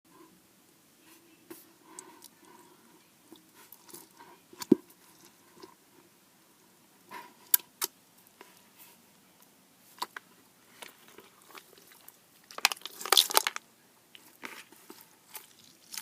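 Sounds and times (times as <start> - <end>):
slime squishing and popping: 11.6 - 13.6.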